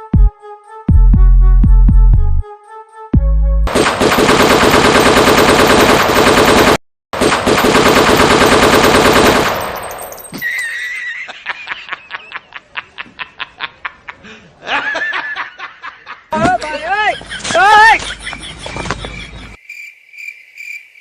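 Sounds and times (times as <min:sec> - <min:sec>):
machine-gun fire: 0:03.7 - 0:10.0.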